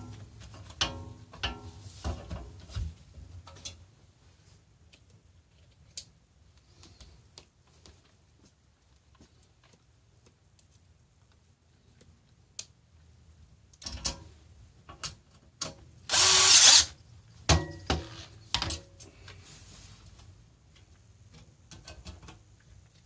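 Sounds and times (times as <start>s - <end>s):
power drill driving bolt: 16.1s - 16.9s.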